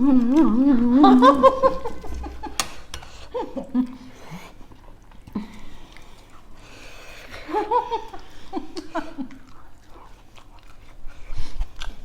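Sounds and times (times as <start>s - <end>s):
person laughing: 0.9s - 2.7s.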